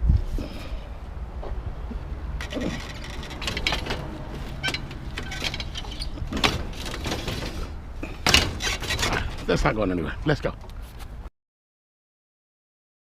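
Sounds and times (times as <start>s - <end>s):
scrap metal clattering: 2.4s - 9.7s.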